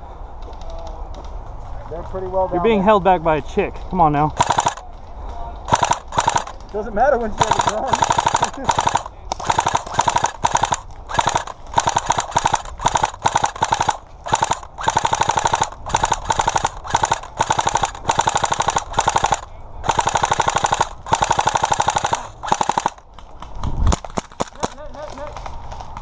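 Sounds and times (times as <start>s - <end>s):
airsoft guns firing bursts: 4.3s - 4.8s, 5.7s - 25.3s.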